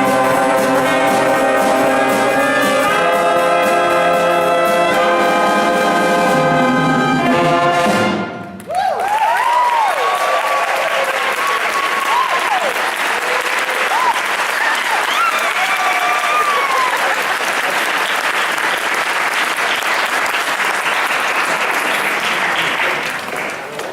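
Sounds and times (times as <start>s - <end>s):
jazz band brass chord: 0.0s - 8.5s
audience cheering: 8.6s - 22.9s
audience applauding: 8.6s - 23.9s.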